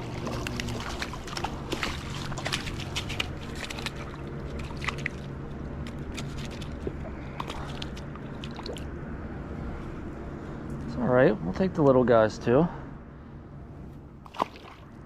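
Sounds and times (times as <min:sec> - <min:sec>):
water sloshing and splashing: 0:00.0 - 0:10.6, 0:14.2 - 0:15.0.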